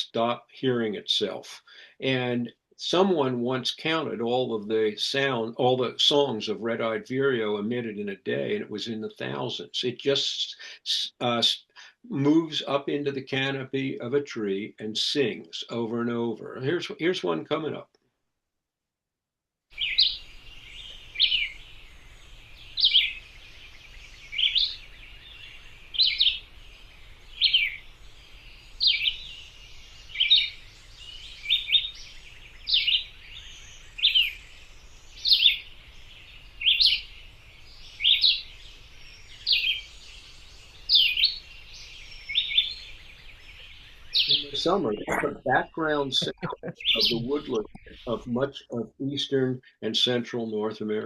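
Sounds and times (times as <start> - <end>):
faint outdoor hiss: 0.0 - 17.9, 19.7 - 51.0
bird singing slurred phrases: 24.0 - 26.4, 40.9 - 49.6.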